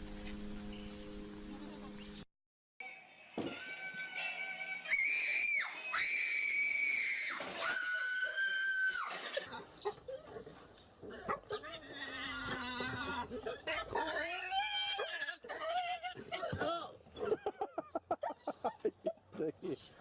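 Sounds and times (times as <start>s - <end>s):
high-pitched screaming cries: 3.5s - 9.5s, 14.0s - 16.2s.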